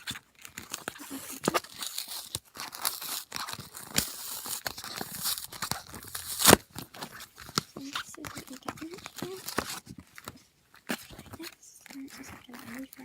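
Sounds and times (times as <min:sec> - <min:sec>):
packaging tearing and crinkling: 0:00.0 - 0:13.0.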